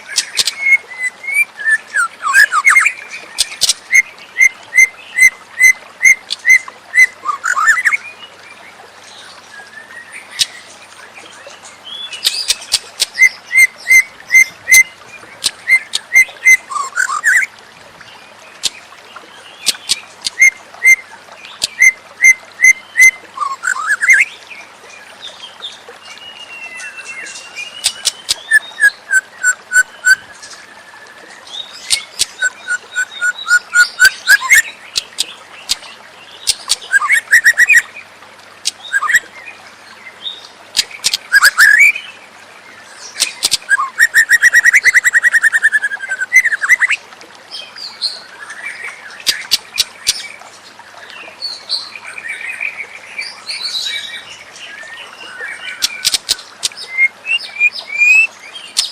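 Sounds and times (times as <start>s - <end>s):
bird singing whistled phrases: 0.4s - 3.0s, 21.7s - 24.3s, 31.9s - 34.7s, 36.9s - 37.8s, 38.9s - 39.2s, 41.3s - 42.0s, 43.2s - 47.0s, 56.8s - 58.9s.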